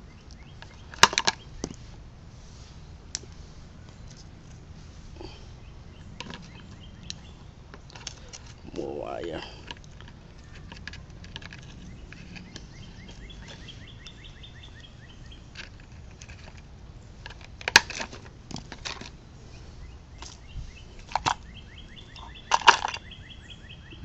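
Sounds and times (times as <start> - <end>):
bird trilling: 19.5 - 24.0.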